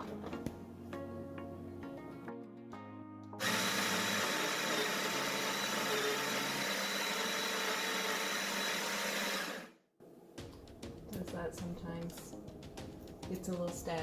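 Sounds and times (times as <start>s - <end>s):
coffee grinder grinding: 3.4s - 9.7s.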